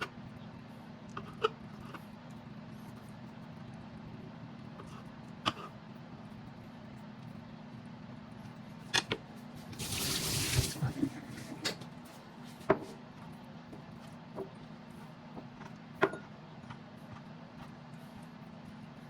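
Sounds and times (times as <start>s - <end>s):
kitchen tap running: 9.8s - 11.2s.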